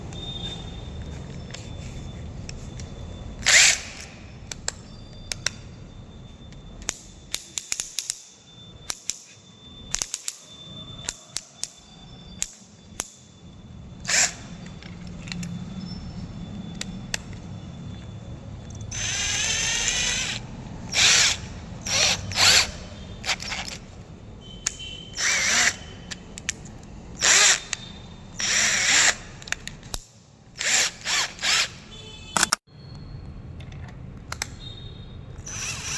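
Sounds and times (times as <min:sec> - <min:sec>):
electric drill whining: 0:03.4 - 0:04.2, 0:14.0 - 0:15.4, 0:18.9 - 0:24.0, 0:25.1 - 0:26.1, 0:27.2 - 0:29.6, 0:30.6 - 0:31.9, 0:35.4 - 0:35.9.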